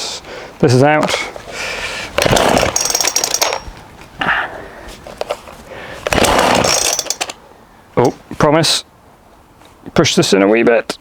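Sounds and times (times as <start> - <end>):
chainsaw engine rattling over: 2.1 - 3.8, 6.0 - 7.4
recoil starter cord pull: 2.2 - 3.7, 6.0 - 7.4.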